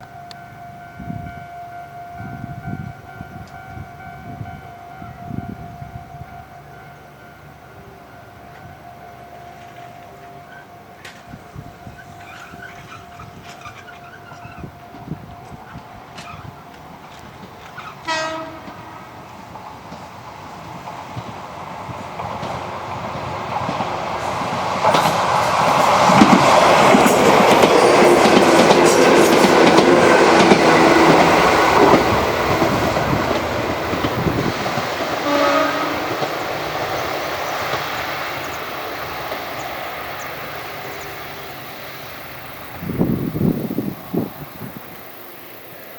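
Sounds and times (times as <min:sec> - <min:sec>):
electric train passing: 0:00.0 - 0:45.9
wheels clattering over rail joints: 0:11.9 - 0:41.0.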